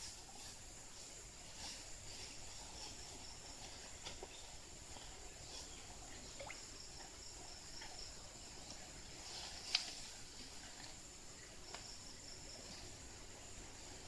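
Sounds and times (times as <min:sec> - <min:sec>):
insect chorus: 0:00.0 - 0:14.0
soft ticks: 0:09.6 - 0:10.0.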